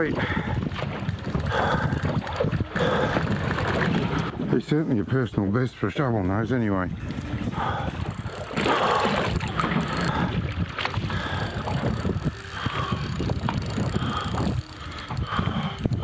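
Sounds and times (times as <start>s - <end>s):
water sloshing against hull: 0.0s - 16.0s
wind buffeting microphone: 0.0s - 16.0s.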